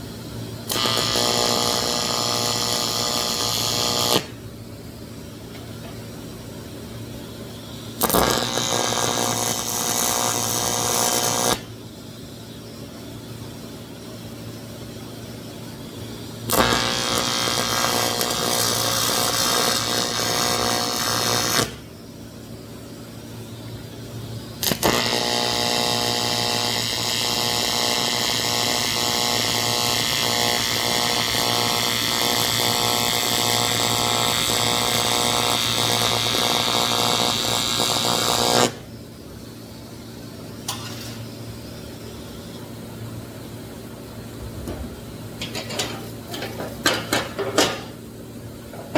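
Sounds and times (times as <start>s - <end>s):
welder low hum: 0.0s - 4.4s, 7.6s - 11.8s, 16.1s - 21.9s, 24.6s - 39.0s, 39.8s - 48.9s
welding arc buzzing: 0.6s - 4.4s, 7.8s - 11.7s, 16.2s - 21.9s, 24.6s - 38.9s, 40.6s - 42.8s, 43.8s - 48.9s.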